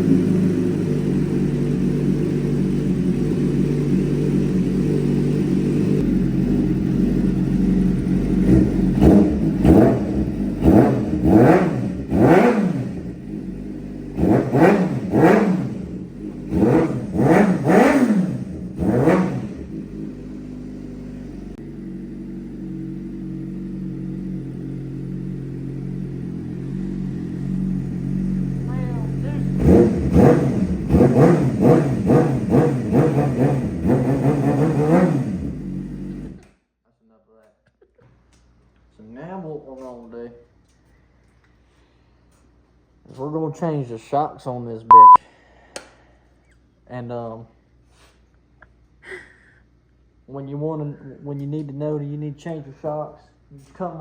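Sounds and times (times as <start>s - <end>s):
motorcycle engine idling and revving: 0.0s - 36.4s.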